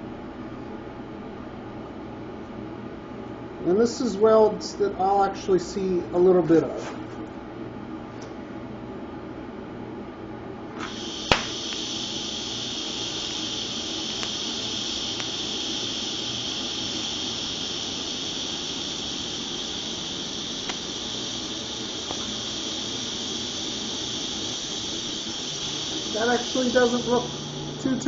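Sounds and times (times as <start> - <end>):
welding arc strike crack: 10.8 - 27.4
welding arc hissing: 10.8 - 28.0.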